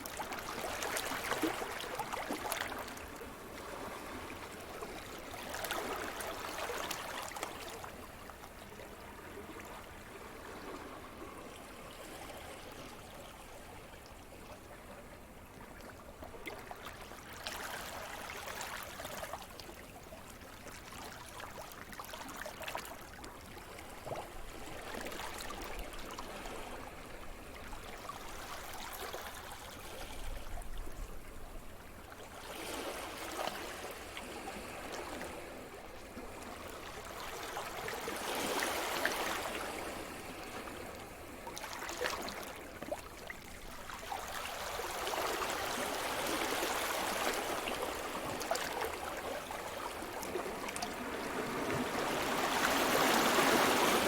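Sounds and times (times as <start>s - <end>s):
waves breaking on shore: 32.3s - 54.0s.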